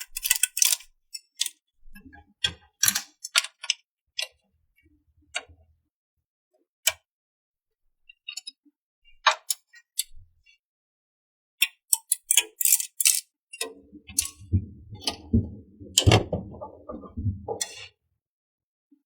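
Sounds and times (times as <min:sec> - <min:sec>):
plastic toy parts clicking: 0:00.0 - 0:01.6, 0:11.6 - 0:13.3
rubbing and knocking: 0:13.6 - 0:17.9.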